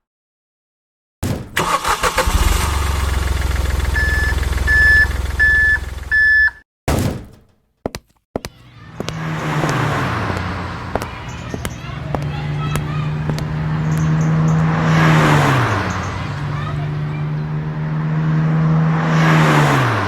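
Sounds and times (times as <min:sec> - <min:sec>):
vehicle engine running: 0:02.2 - 0:06.2, 0:08.6 - 0:20.0
passing vehicle pitch dropping: 0:08.6 - 0:20.0.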